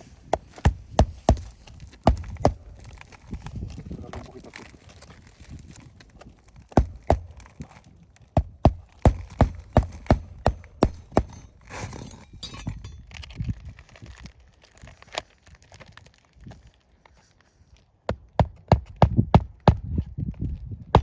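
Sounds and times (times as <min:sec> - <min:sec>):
hammer striking nails: 0:06.8 - 0:07.5, 0:08.4 - 0:13.0
scraping on roof shingles: 0:08.4 - 0:12.3.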